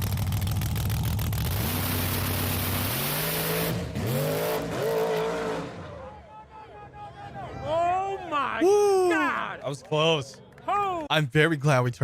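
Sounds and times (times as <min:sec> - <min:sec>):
car engine revving: 0:00.0 - 0:06.0
road and tyre noise: 0:00.0 - 0:10.9.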